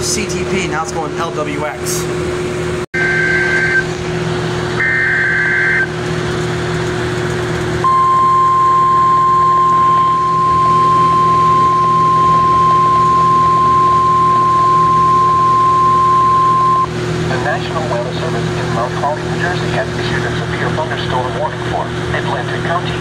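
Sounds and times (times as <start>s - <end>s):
single-tone warning alarm: 3.0s - 3.9s, 4.8s - 5.9s, 7.8s - 16.9s
screeching two-tone data burst: 4.8s - 5.9s
low steady hum: 7.2s - 23.0s.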